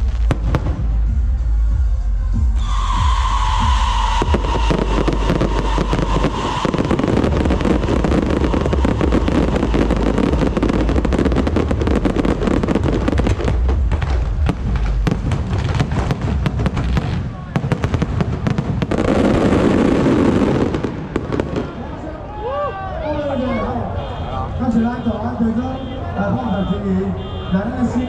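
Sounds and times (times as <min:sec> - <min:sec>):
low rumble: 0:00.0 - 0:18.8
fireworks crackling: 0:02.5 - 0:22.2
firework whistling: 0:02.6 - 0:13.6.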